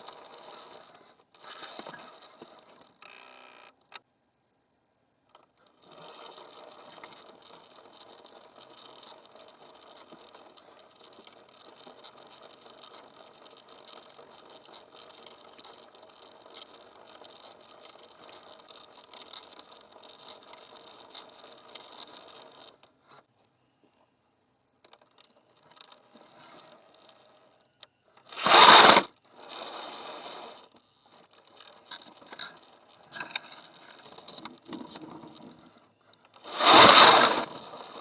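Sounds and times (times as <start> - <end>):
fine rattling and clicking: 0.0 - 4.1, 5.2 - 38.0
electric motor whir: 28.3 - 33.4, 36.4 - 38.0.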